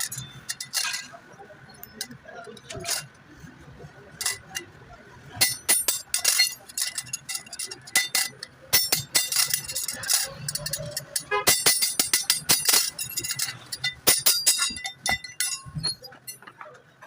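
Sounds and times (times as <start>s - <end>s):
metal clinks and taps: 5.3s - 17.0s.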